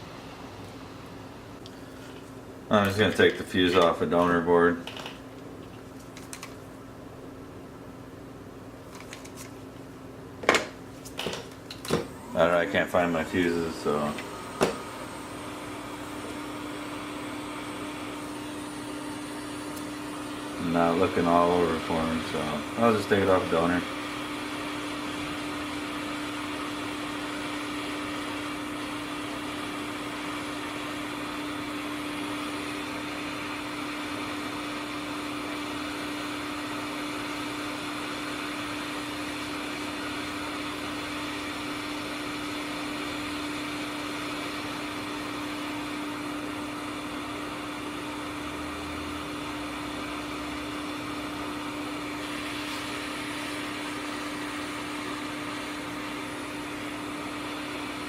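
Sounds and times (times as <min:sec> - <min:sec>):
hot air station whirring: 0:11.2 - 0:58.0.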